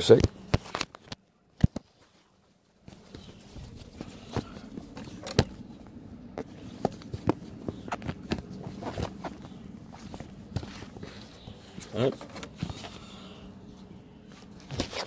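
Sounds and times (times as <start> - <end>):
low steady hum: 0.0 - 15.0
handling clicks and knocks: 2.8 - 11.1.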